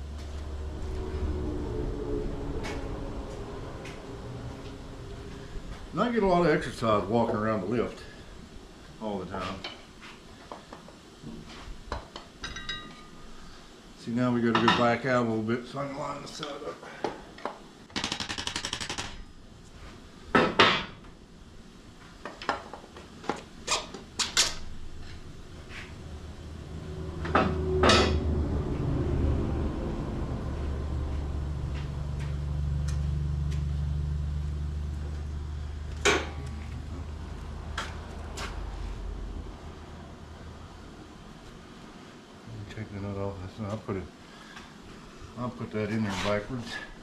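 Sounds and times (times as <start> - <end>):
low steady hum: 0.0 - 10.0, 23.4 - 47.0
rapid clicks: 17.9 - 19.2.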